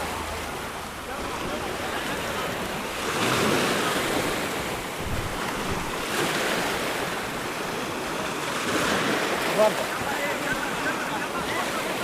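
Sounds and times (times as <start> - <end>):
waves washing onto shore: 0.0 - 12.0
wind buffeting microphone: 0.6 - 9.5.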